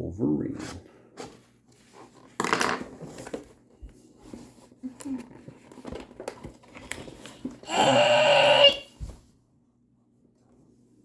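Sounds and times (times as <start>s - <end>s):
plastic and card rustling: 1.8s - 7.6s.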